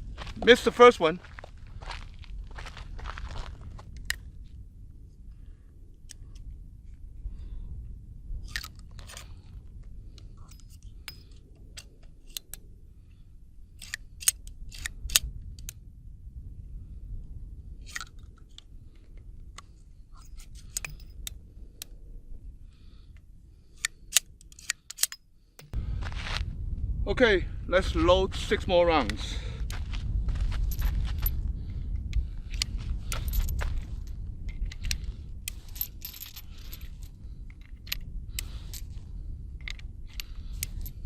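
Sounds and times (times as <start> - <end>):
low steady rumble: 0.0 - 41.0
revolver metallic clicks: 23.8 - 25.8.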